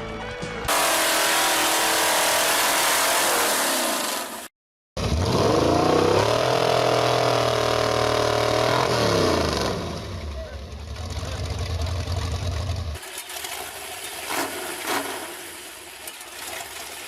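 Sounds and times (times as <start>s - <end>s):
chainsaw rushing noise: 0.7s - 10.1s
chainsaw engine revving: 0.7s - 10.2s.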